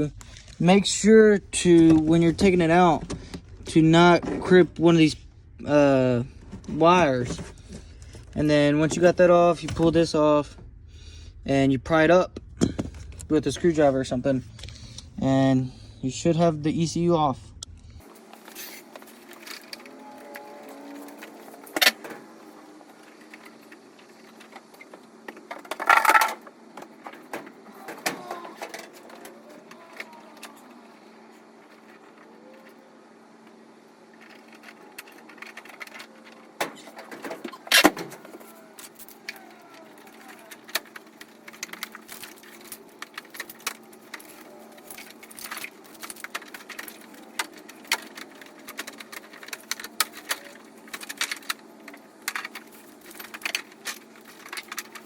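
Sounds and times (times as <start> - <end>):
faint steady hum: 0.0 - 55.0
plastic connectors clicking: 38.2 - 55.0.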